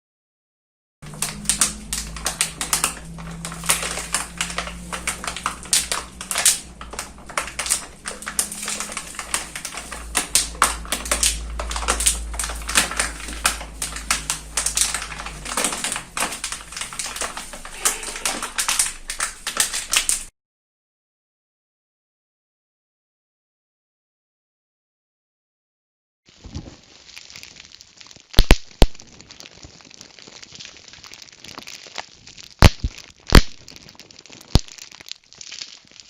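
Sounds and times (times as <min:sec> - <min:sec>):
campfire crackling: 0:01.0 - 0:20.3, 0:26.3 - 0:36.0
low rumble: 0:01.0 - 0:20.3.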